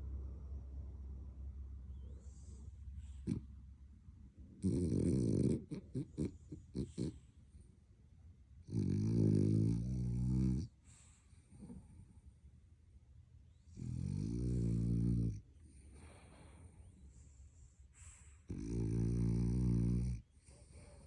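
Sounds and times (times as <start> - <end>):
puppy snoring: 2.3 - 3.6, 4.6 - 7.6, 8.6 - 12.0, 13.6 - 21.0
short snorts: 3.0 - 3.5, 4.6 - 7.2.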